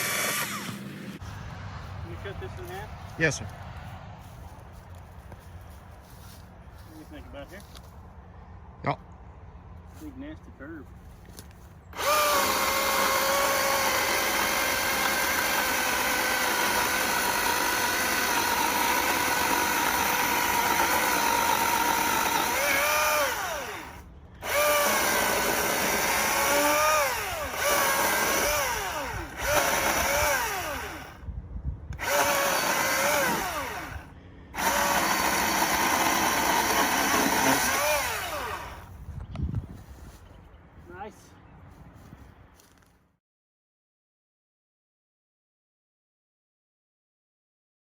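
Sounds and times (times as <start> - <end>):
battery chainsaw whining: 0.0 - 1.2, 12.0 - 31.2, 32.0 - 38.9.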